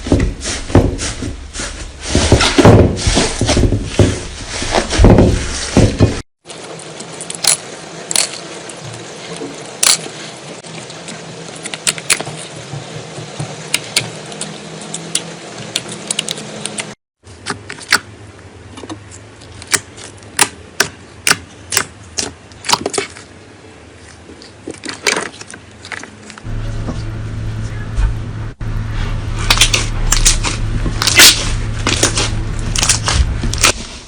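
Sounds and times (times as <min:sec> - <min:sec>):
slime squishing and popping: 0:29.5 - 0:33.8.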